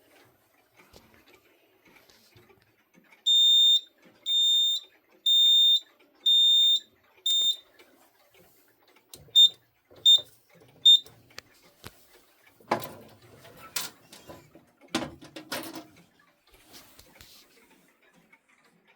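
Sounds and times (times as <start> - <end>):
fire alarm beeping: 3.3 - 7.6, 9.3 - 11.1
clattering and knocks: 12.6 - 16.0.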